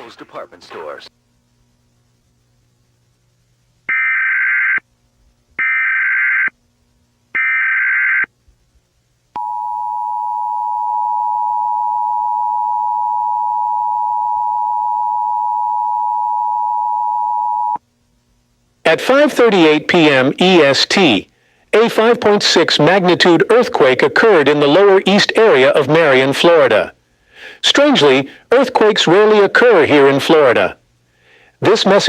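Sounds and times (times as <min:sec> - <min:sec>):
two-tone attention signal: 0:09.4 - 0:17.8.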